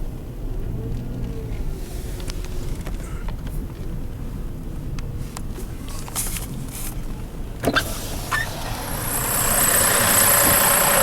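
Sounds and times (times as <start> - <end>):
truck engine rumbling: 7.1 - 11.0.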